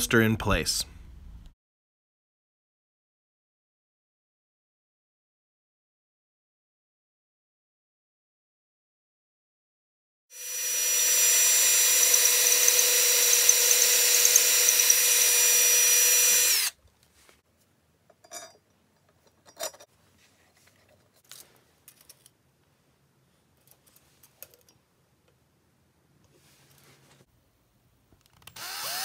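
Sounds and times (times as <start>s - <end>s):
electric power tool whining: 10.3s - 16.8s, 28.5s - 29.0s.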